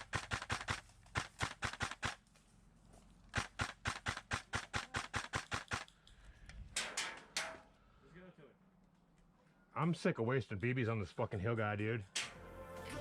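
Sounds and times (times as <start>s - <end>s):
airsoft gun firing rapid shots: 0.0s - 2.2s, 3.3s - 5.9s.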